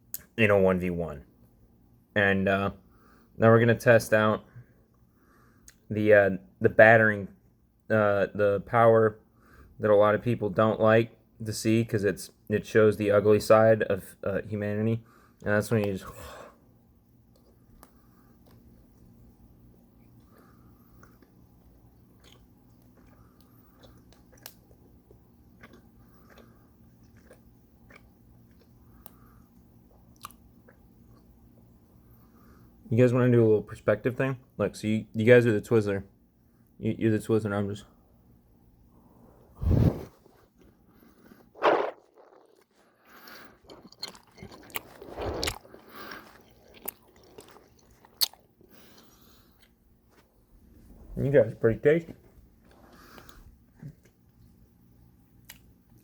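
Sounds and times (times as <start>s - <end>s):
biting and chewing licorice: 17.2s - 31.7s, 40.5s - 50.2s, 55.4s - 56.0s
wet mouth clicks and smacks: 46.8s - 48.4s.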